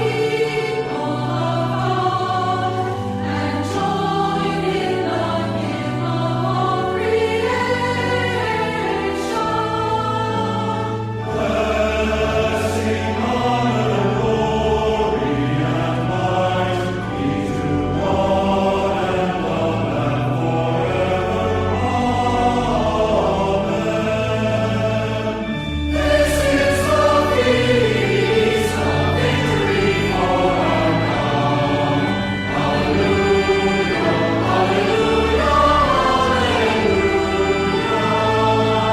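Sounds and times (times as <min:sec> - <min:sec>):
choir singing a hymn: 0:00.0 - 0:38.9
low sustained accompaniment: 0:00.0 - 0:38.9.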